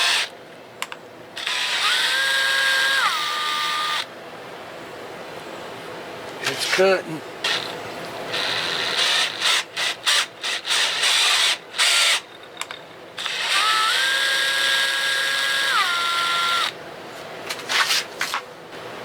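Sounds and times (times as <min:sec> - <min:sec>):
electric drill cutting metal: 0:00.0 - 0:00.3, 0:01.4 - 0:04.1, 0:07.4 - 0:12.4, 0:13.2 - 0:16.8.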